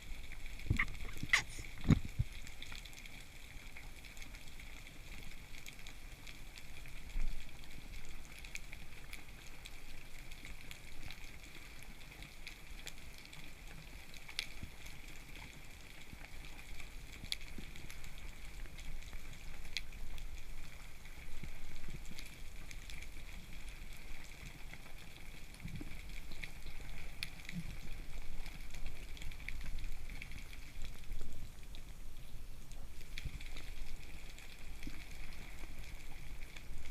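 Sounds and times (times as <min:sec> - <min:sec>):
underwater clicks and pops: 0:00.7 - 0:02.2.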